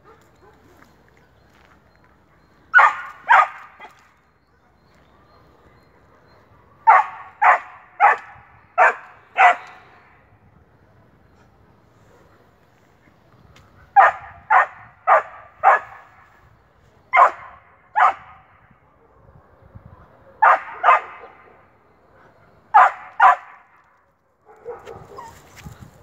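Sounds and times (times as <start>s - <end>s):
dog barking: 2.7s - 4.0s, 6.2s - 9.8s, 14.0s - 16.1s, 17.1s - 18.5s, 20.4s - 21.6s, 22.7s - 23.7s, 24.4s - 25.4s.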